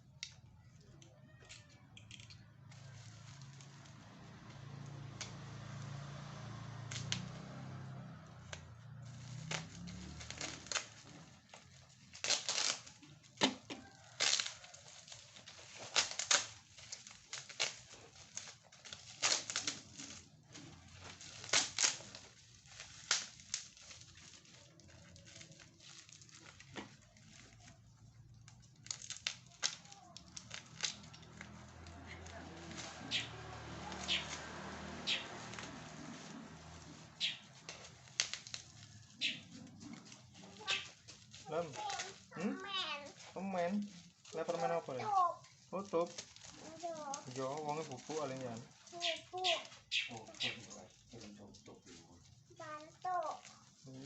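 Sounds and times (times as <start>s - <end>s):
plastic wrapping crinkling: 0.0s - 54.0s.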